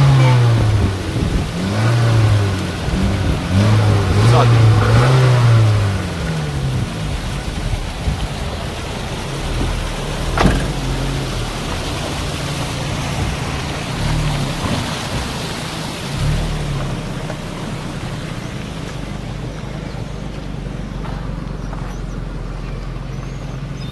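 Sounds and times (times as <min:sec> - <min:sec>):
car engine revving: 0:00.0 - 0:23.9.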